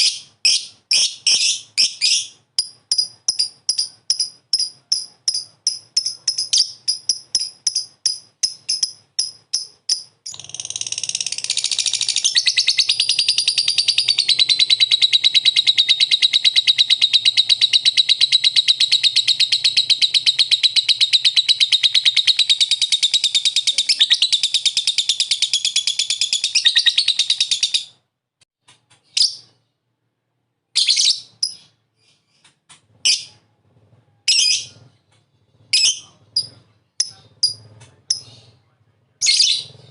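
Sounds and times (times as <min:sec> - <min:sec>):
lovebird chattering trill: 0:00.0 - 0:27.9, 0:35.7 - 0:38.4
lovebird chirps: 0:00.0 - 0:28.0, 0:29.0 - 0:29.6, 0:30.7 - 0:33.4, 0:34.2 - 0:38.6, 0:39.2 - 0:39.9.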